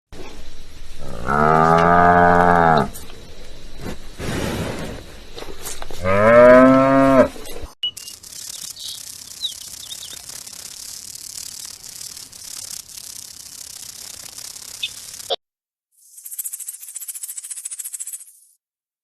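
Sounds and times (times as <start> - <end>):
steady hiss: 0.2 - 6.0, 8.0 - 15.4
cow mooing: 1.1 - 2.9, 6.0 - 7.3
faint high chirps: 7.8 - 15.4.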